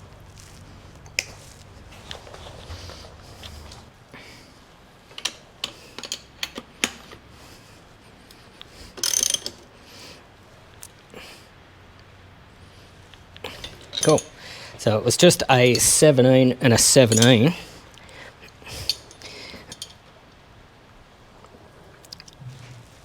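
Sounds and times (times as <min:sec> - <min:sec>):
hand tool clicks and knocks: 0:05.1 - 0:07.2, 0:13.5 - 0:14.4, 0:15.4 - 0:16.1, 0:17.0 - 0:17.5, 0:18.8 - 0:20.0
ratchet rasping: 0:08.9 - 0:09.7, 0:13.5 - 0:16.2, 0:18.8 - 0:20.0.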